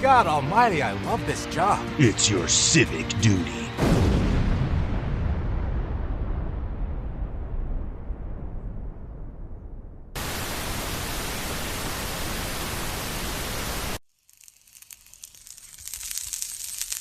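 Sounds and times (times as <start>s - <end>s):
low rumble: 3.8s - 10.2s
faint crackles and clicks: 14.0s - 17.0s.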